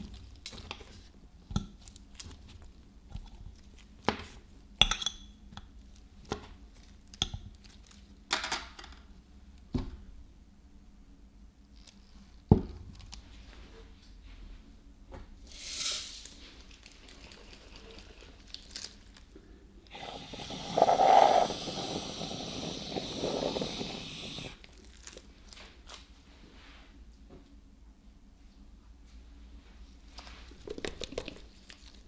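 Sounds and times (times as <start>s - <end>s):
whipped cream can spraying: 19.9s - 24.6s.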